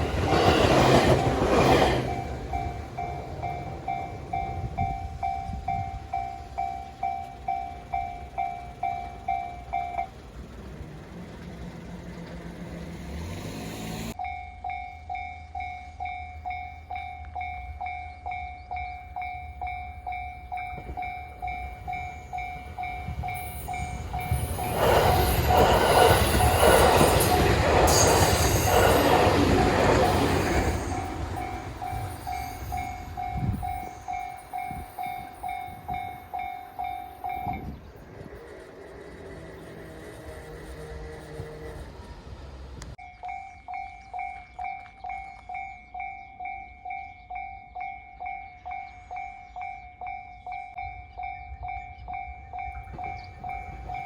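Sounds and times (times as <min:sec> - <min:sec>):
level crossing warning bell: 0:00.0 - 0:12.0, 0:14.1 - 0:54.0
train running past: 0:00.0 - 0:54.0.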